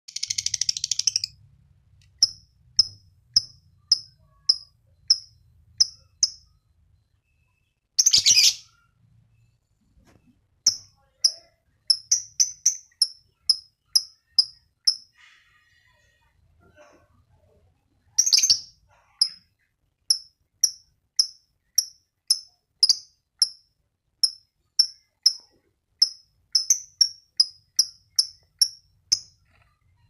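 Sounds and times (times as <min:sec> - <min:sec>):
lovebird chattering: 0:00.1 - 0:01.4, 0:08.0 - 0:08.8, 0:10.7 - 0:15.3, 0:18.2 - 0:19.4, 0:20.1 - 0:23.6, 0:24.2 - 0:29.6
lovebird chirping: 0:00.1 - 0:01.5, 0:02.2 - 0:30.0.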